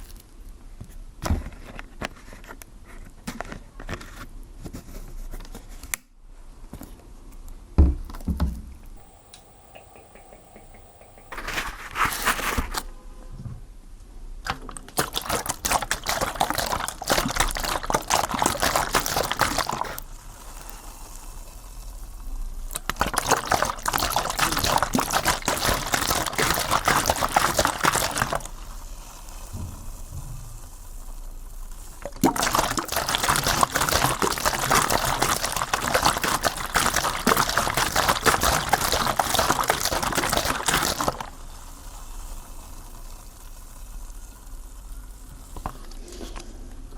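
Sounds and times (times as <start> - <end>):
water hissing on fire: 15.0 - 46.2.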